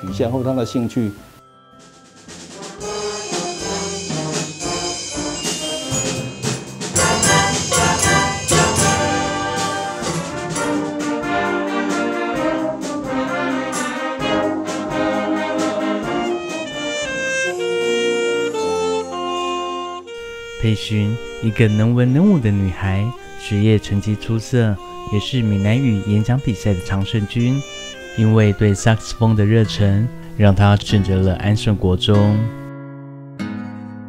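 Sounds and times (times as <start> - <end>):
sharp percussion hits: 1.8 - 18.7
wind band playing: 2.3 - 29.6.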